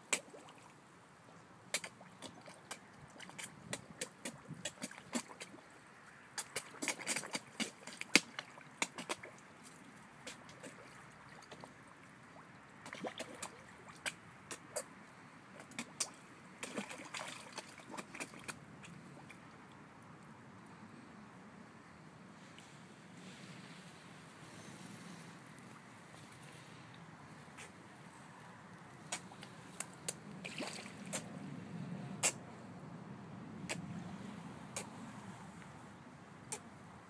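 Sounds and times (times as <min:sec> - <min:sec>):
sharp clicks and splashes: 0:01.7 - 0:05.6, 0:06.4 - 0:12.0, 0:12.8 - 0:14.9, 0:15.6 - 0:19.4
water sloshing and trickling: 0:01.8 - 0:14.8, 0:15.6 - 0:19.9, 0:27.6 - 0:31.4.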